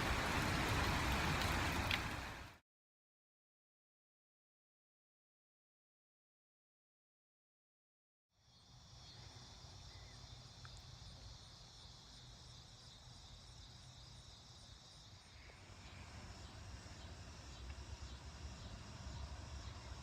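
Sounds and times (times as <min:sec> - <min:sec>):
crickets chirping: 0:08.4 - 0:20.0.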